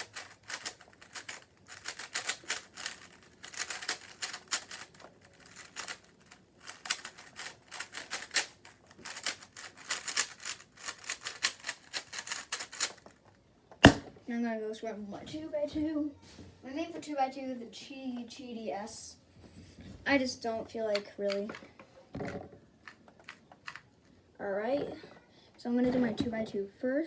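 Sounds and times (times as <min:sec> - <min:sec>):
plastic puzzle cube clicking: 0:00.0 - 0:13.2, 0:20.9 - 0:21.7, 0:22.8 - 0:23.9.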